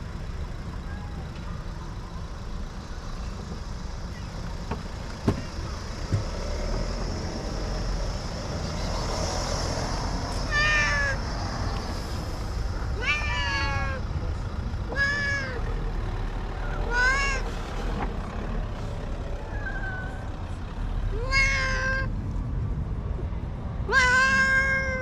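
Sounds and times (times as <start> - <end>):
cat meowing loudly: 10.4 - 11.3, 13.0 - 14.0, 14.9 - 15.7, 16.6 - 17.5, 19.4 - 20.3, 21.1 - 22.1, 23.9 - 25.0.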